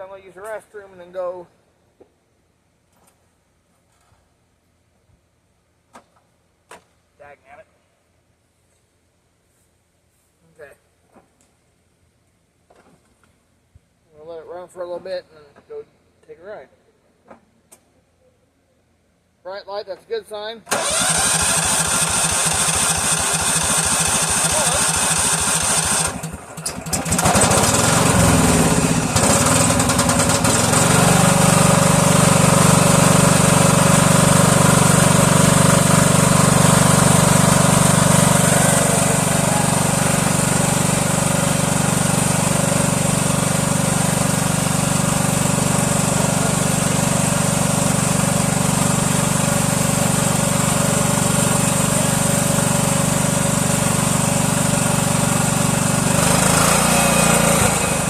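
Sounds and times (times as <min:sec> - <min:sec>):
riding mower engine running: 0:20.7 - 0:58.0.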